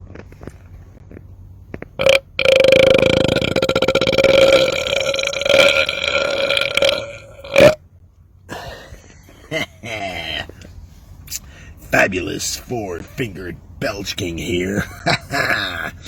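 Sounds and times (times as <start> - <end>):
man belching: 2.0 - 7.8, 15.3 - 16.0.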